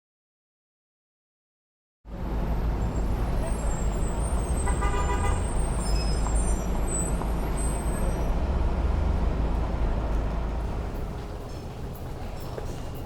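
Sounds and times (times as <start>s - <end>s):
traffic engines rumbling: 2.1s - 13.0s
car horn toot: 4.6s - 5.6s.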